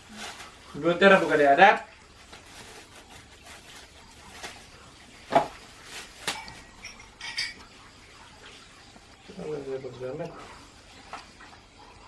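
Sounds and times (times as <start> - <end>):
packaging crinkling: 0.0 - 7.0.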